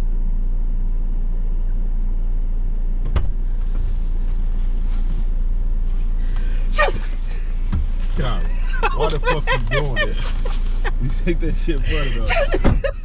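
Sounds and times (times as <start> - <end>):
car engine low rumble: 0.0 - 13.0.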